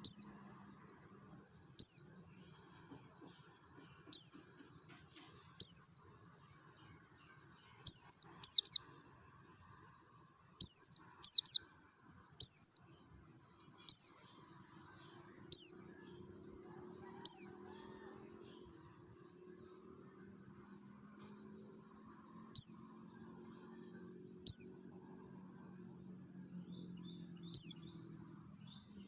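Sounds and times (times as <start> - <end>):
bird giving high chirps: 0.0 - 0.3, 1.8 - 2.0, 5.6 - 6.0, 7.9 - 8.8, 10.6 - 11.6, 12.4 - 12.8, 13.9 - 14.1, 15.5 - 15.7, 17.3 - 17.5, 22.6 - 22.8, 24.5 - 24.7, 27.6 - 27.8.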